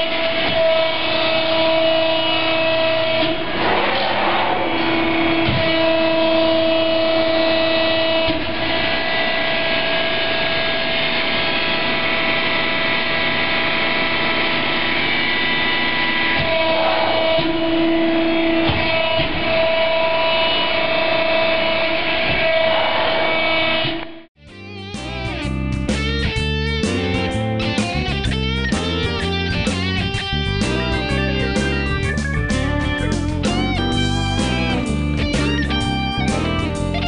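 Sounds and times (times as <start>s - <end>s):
hydraulic press hum and whine: 0.0s - 24.2s.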